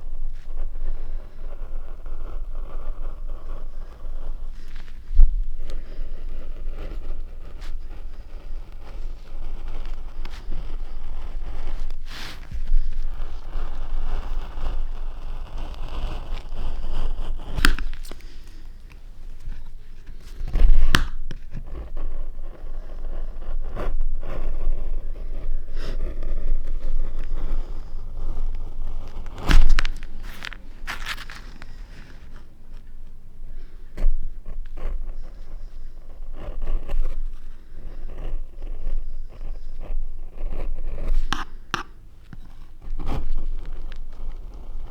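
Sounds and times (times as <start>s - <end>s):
scraping and rustling paper: 3.7s - 21.9s, 26.8s - 32.9s.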